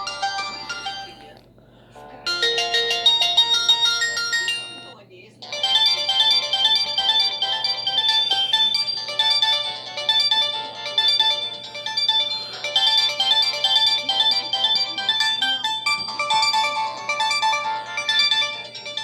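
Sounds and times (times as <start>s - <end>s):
mobile phone ringtone: 0.0s - 1.4s, 2.0s - 19.0s.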